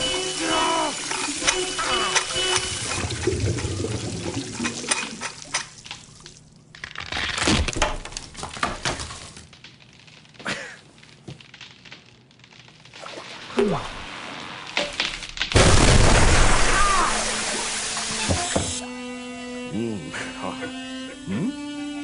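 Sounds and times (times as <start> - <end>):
water gushing from a faucet: 0.0 - 6.5, 16.2 - 18.8
loud splash: 15.6 - 18.4.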